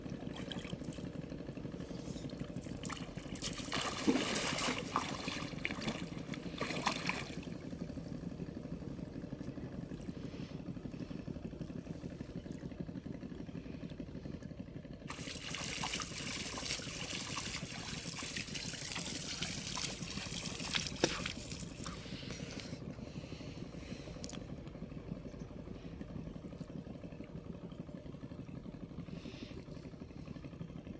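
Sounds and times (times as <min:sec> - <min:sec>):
water trickling and splashing: 0:02.3 - 0:07.7, 0:15.1 - 0:22.1.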